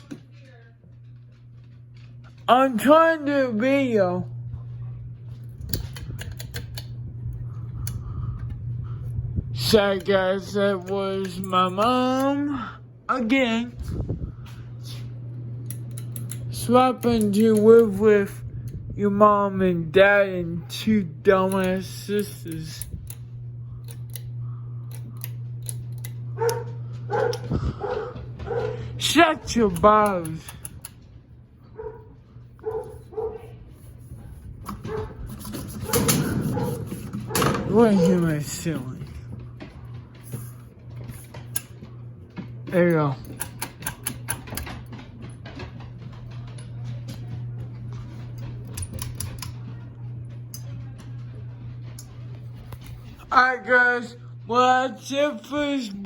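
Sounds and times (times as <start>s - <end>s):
steady low hum: 0.0s - 56.0s
dog barking: 26.4s - 29.0s, 31.7s - 33.6s, 34.8s - 35.2s, 35.8s - 38.3s.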